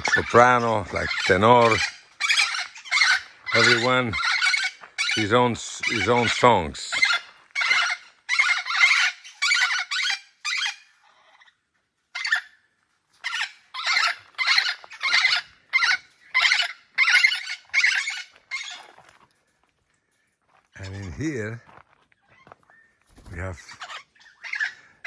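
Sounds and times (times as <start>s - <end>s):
parrots squawking: 0.0s - 12.6s, 13.2s - 19.1s, 23.6s - 25.0s.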